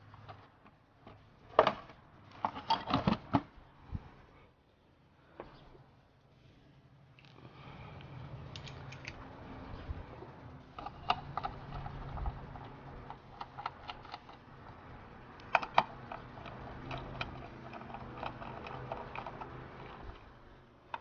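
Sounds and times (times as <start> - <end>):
light clicks and metallic taps: 8.0 - 9.2
sharp plastic clicks: 8.5 - 9.2, 10.7 - 20.2.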